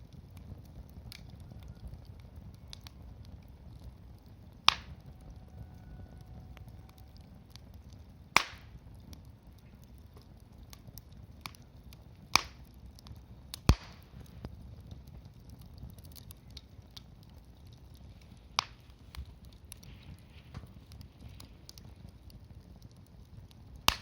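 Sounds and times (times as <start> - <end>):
burning wood popping: 0.0 - 24.0
wood fire crackling: 0.0 - 24.0.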